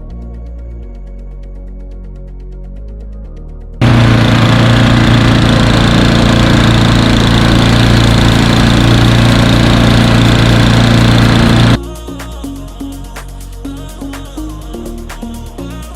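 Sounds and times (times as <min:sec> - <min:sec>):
snow blower engine running: 0:03.8 - 0:11.8.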